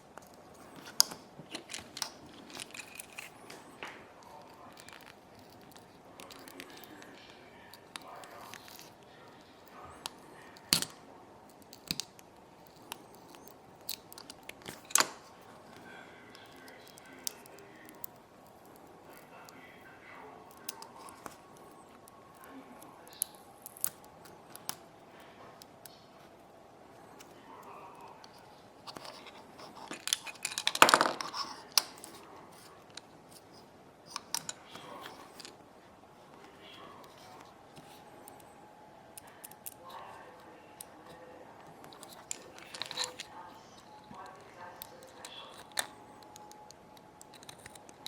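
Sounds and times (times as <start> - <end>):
small tools clicking and tapping: 28.2 - 32.2, 41.8 - 48.0.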